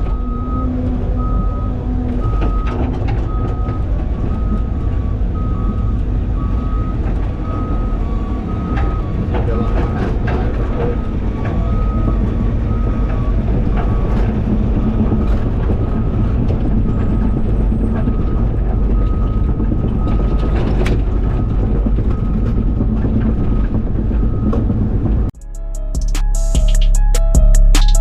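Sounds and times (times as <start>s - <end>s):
excavator diesel engine: 0.0s - 25.4s
hydraulics working: 0.0s - 25.4s
high beeping: 25.4s - 28.0s.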